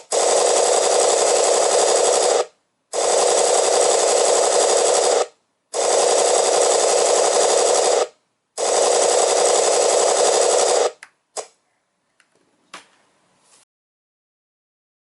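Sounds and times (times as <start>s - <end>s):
electronic machine-gun fire: 0.0s - 11.0s.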